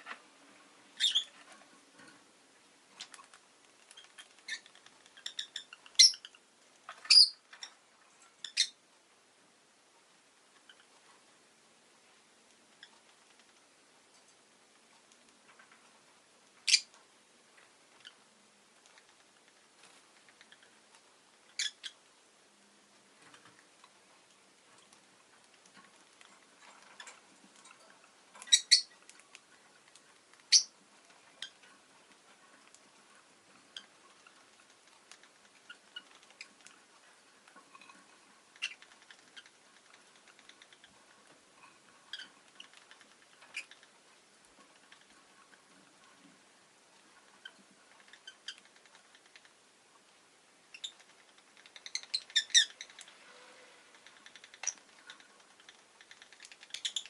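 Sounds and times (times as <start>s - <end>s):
faint clicks and scratches: 0.0s - 9.1s, 9.9s - 57.0s
lovebird chirping: 1.0s - 1.4s, 3.9s - 7.8s, 8.4s - 8.8s, 16.6s - 17.0s, 21.4s - 22.0s, 28.4s - 29.1s, 30.4s - 30.8s, 38.5s - 41.0s, 50.7s - 57.0s.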